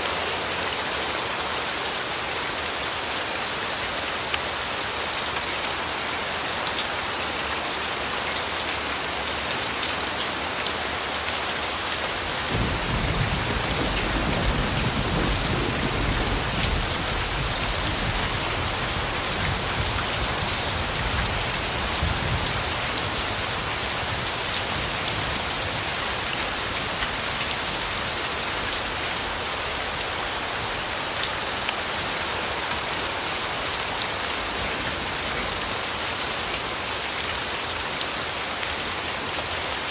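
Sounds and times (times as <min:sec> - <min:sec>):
steady rain falling: 0:00.0 - 0:39.9
thunder rumbling: 0:12.5 - 0:19.8.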